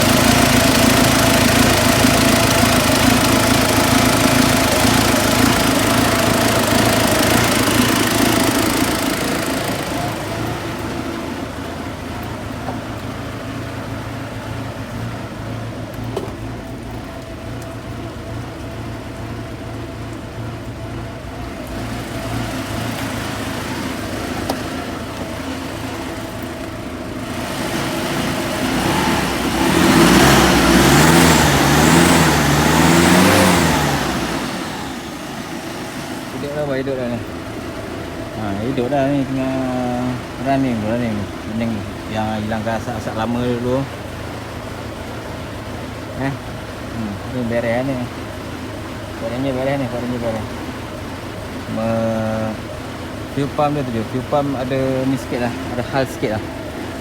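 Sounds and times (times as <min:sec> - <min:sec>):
diesel engine running: 0:00.0 - 0:57.0
man talking: 0:08.2 - 0:11.2, 0:36.3 - 0:37.3, 0:38.3 - 0:44.0, 0:46.1 - 0:48.2, 0:49.2 - 0:50.6, 0:51.6 - 0:56.5.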